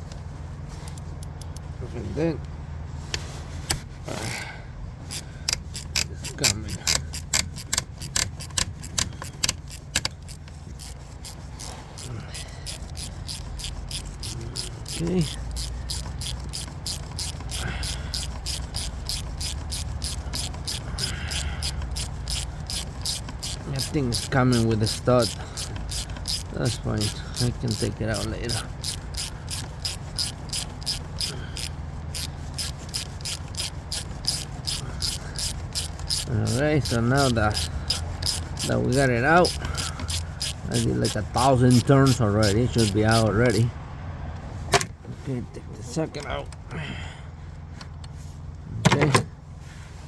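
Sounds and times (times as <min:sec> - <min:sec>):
ratchet wrench clicking: 0:00.9 - 0:01.7, 0:05.0 - 0:43.7.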